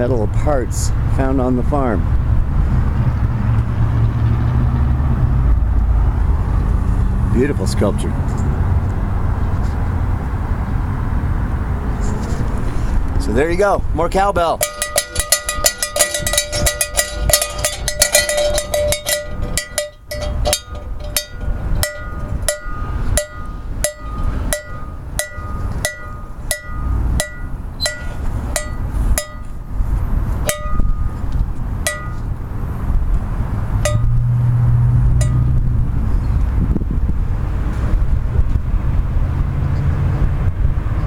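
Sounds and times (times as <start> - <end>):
cowbell being struck: 14.6 - 29.7, 30.5 - 32.3, 33.8 - 34.3, 35.2 - 35.6.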